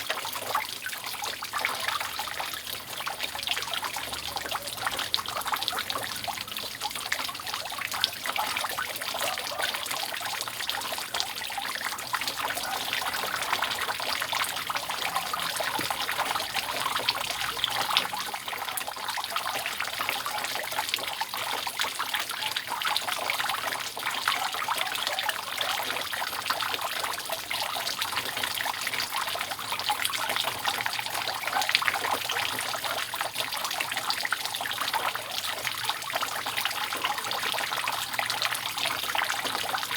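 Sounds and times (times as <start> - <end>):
water dripping off a roof: 0.0 - 39.9.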